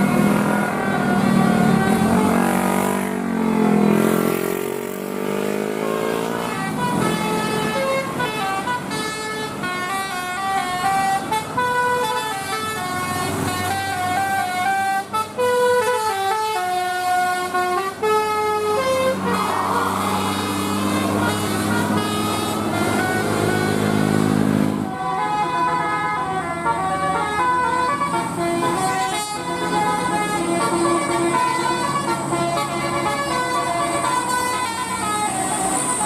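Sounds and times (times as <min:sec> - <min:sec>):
musical air horn tune: 0:06.0 - 0:36.0.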